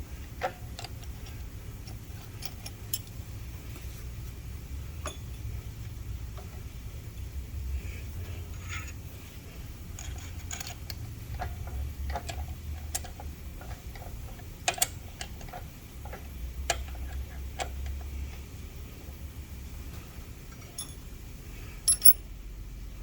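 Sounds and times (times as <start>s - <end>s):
light metallic ticks and clinks: 5.0s - 5.4s, 20.5s - 21.1s, 21.8s - 22.3s.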